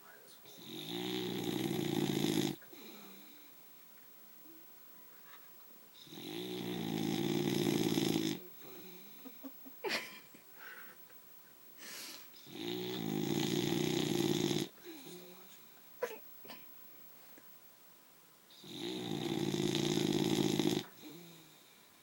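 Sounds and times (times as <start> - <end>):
dog snoring: 0.4 - 3.5, 6.0 - 9.4, 12.4 - 15.2, 18.5 - 21.9.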